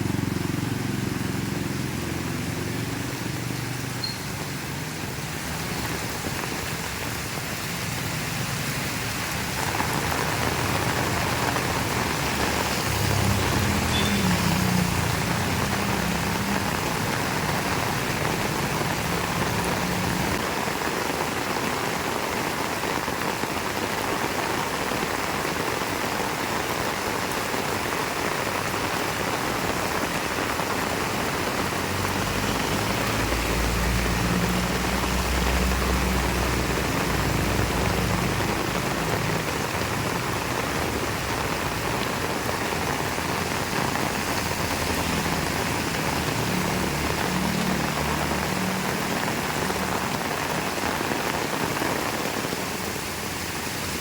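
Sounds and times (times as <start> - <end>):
heavy rain pouring: 0.0 - 54.0.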